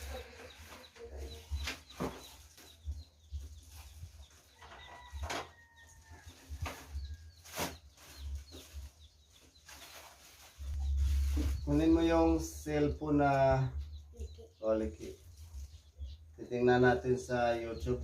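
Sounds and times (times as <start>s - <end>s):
chickens clucking and cheeping: 0.0s - 18.0s.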